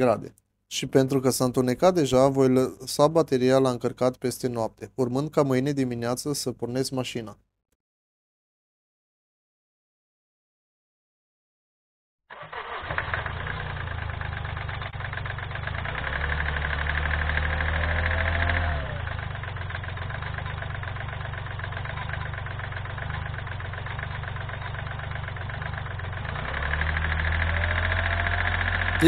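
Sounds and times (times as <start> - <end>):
knocking diesel engine running: 12.4 - 29.0.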